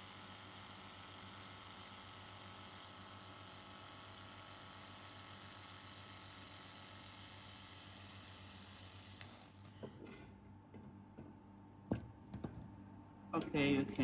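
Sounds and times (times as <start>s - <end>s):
laser welder hissing and sizzling: 0.0s - 9.8s.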